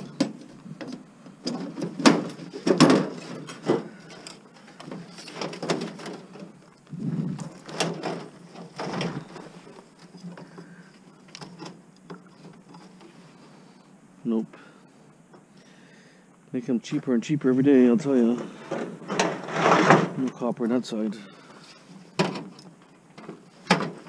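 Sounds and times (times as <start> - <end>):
sheet metal clattering and knocking: 0.0 - 4.0.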